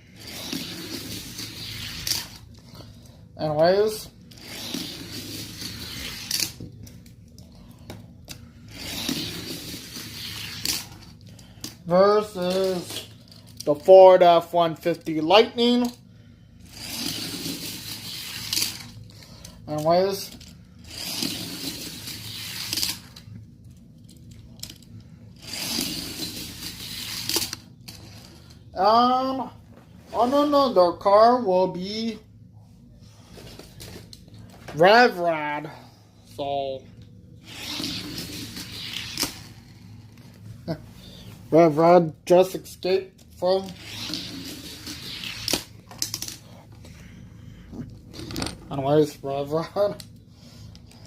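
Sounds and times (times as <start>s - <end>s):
toy cars rolling on plastic track: 0.2s - 2.4s, 4.3s - 6.6s, 16.7s - 18.9s, 19.8s - 23.1s, 25.4s - 28.3s
toy cars clicking and rattling: 16.7s - 19.0s.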